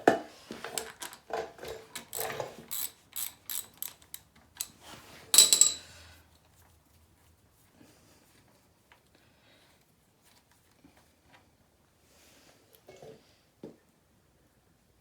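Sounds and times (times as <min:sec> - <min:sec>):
ratchet wrench clicking: 0:02.0 - 0:04.8
ringing metal clink: 0:05.4 - 0:05.9.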